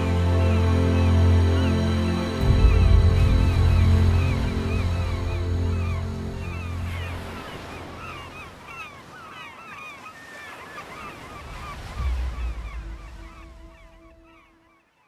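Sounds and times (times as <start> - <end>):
low rumble: 0.0 - 8.4, 11.6 - 14.5
music: 0.0 - 8.4, 12.0 - 14.5
soft wash of noise: 0.0 - 9.0, 11.3 - 14.4
flock of birds calling: 0.0 - 14.8.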